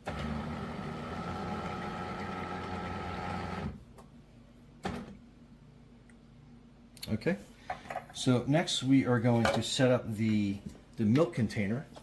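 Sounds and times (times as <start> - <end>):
espresso machine buzzing: 0.0 - 3.8.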